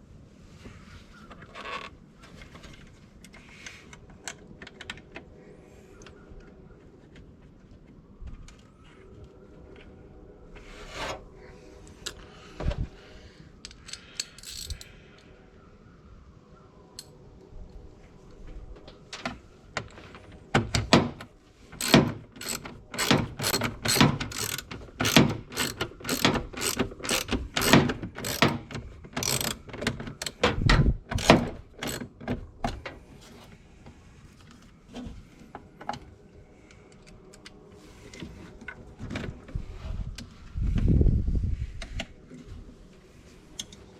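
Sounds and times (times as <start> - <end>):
socket ratchet clicking: 13.9 - 14.8, 21.8 - 29.6, 31.2 - 32.0
tool handling: 14.3 - 14.8, 21.8 - 32.1.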